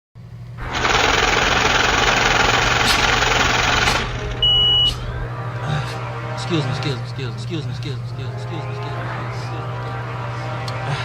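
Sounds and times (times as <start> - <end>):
engine running: 0.6 - 5.6
loud rushing noise: 2.3 - 6.0
high-pitched beep: 4.4 - 5.0.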